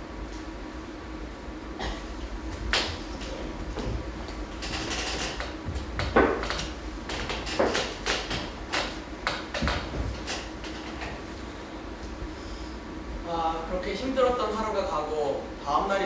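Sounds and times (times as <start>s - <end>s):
objects and furniture being moved: 2.5s - 8.5s, 9.5s - 11.3s.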